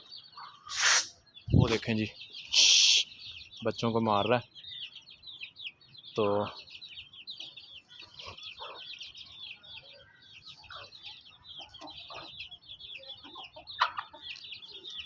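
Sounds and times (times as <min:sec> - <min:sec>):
chicks peeping: 0:00.0 - 0:15.0
loud squawk: 0:00.5 - 0:01.8, 0:02.5 - 0:03.1
hens clucking: 0:07.4 - 0:15.0.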